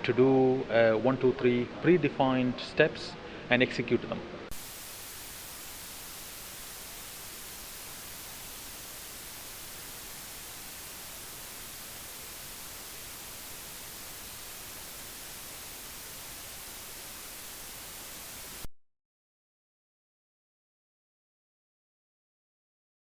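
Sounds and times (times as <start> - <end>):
steady static hiss: 4.4 - 18.7.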